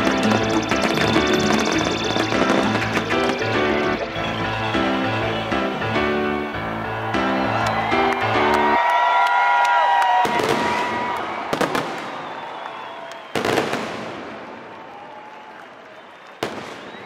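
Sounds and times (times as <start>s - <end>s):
steady tones: 0.0s - 6.8s
fireworks bangs with echoing rumble: 10.2s - 12.4s, 13.3s - 14.8s, 16.4s - 17.0s.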